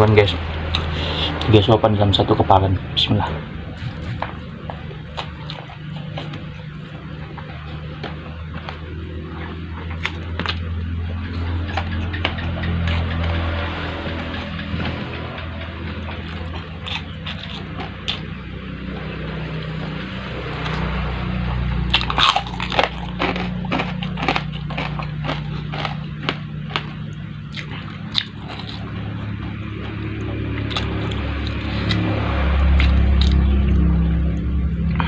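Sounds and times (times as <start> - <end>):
person chewing food: 16.3 - 18.3, 21.9 - 29.0, 30.2 - 32.1, 32.7 - 33.8.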